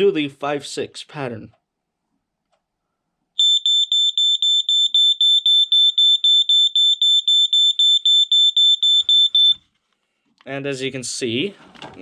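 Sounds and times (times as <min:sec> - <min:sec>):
smoke alarm beeping rapidly: 0:03.4 - 0:09.6.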